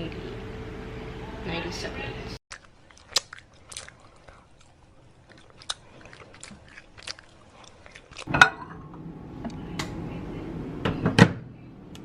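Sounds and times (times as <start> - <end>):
microwave oven humming: 0.0 - 2.4, 8.3 - 12.0.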